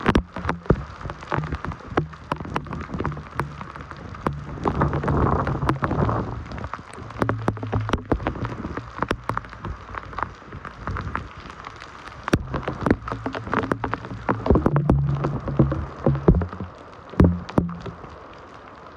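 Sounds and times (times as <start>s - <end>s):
heavy rain on hard surface: 0.0s - 18.9s
low hum changing pitch: 12.4s - 18.0s.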